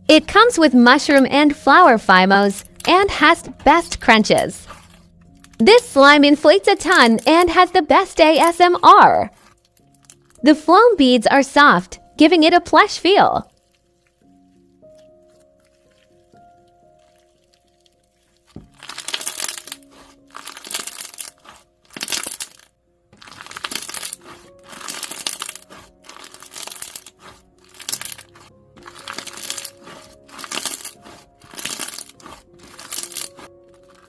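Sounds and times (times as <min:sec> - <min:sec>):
soft background music: 0:00.0 - 0:34.0
slime crackling when squeezed: 0:14.8 - 0:34.0.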